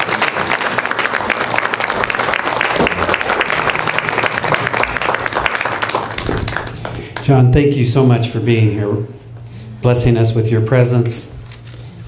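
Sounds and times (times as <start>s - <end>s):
congregation applauding: 0.0s - 7.3s.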